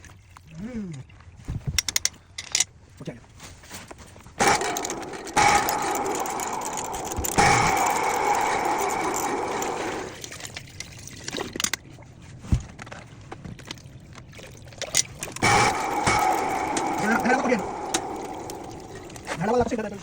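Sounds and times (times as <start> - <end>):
drain snake motor humming: 4.4 - 10.5, 15.3 - 19.8.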